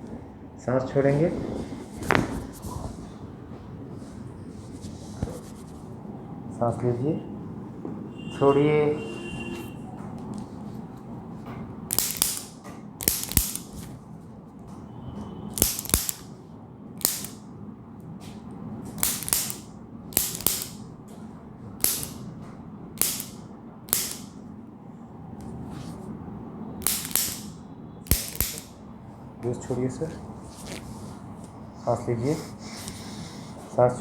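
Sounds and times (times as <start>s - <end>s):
sharp slaps or cracks: 11.9s - 13.9s, 15.5s - 16.3s, 17.0s - 17.4s, 19.0s - 20.8s, 21.8s - 22.3s, 23.0s - 24.4s, 26.8s - 28.8s.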